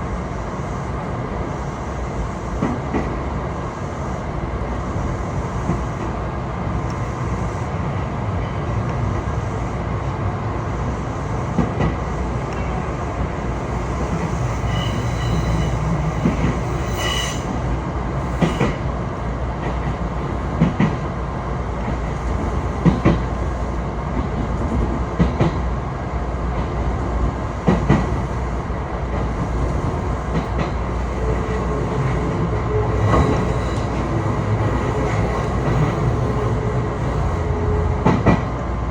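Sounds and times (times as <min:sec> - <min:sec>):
train rumbling along track: 0:00.0 - 0:38.9
thin wheel squeal: 0:14.4 - 0:17.6.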